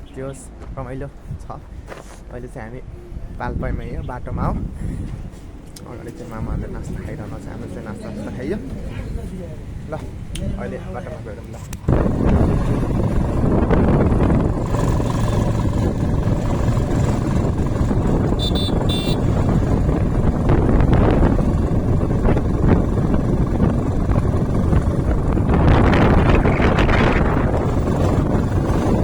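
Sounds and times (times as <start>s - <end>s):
wind buffeting microphone: 2.8s - 29.0s
motorcycle engine running: 11.8s - 29.0s
short high beeps: 18.4s - 19.2s.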